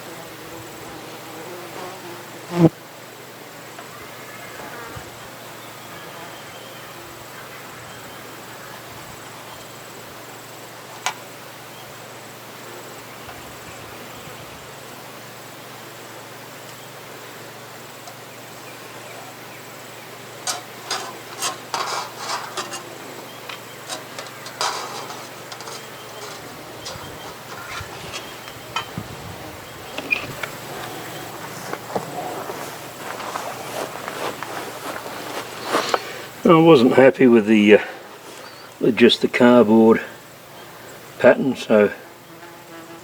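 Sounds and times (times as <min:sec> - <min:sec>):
steady hiss: 0:00.0 - 0:43.0
tools and metal pieces handled: 0:20.4 - 0:29.0.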